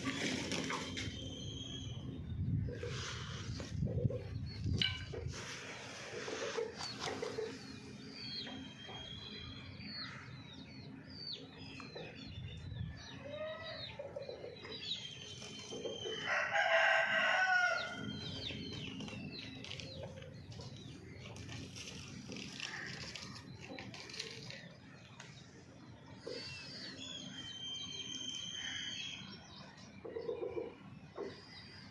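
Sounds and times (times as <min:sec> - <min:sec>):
hens clucking: 0:03.6 - 0:08.0
rooster crowing: 0:16.1 - 0:18.1.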